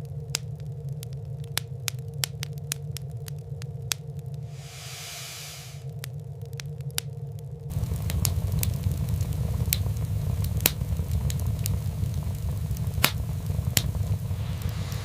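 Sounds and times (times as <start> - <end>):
fire crackling and popping: 0.0 - 15.0
low steady rumble: 5.6 - 15.0.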